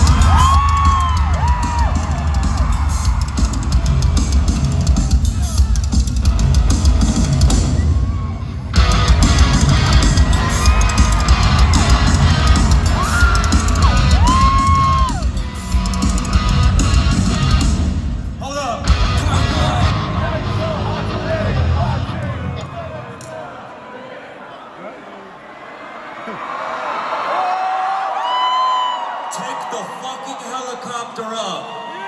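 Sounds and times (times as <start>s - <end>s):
live rock music: 0.0s - 23.1s.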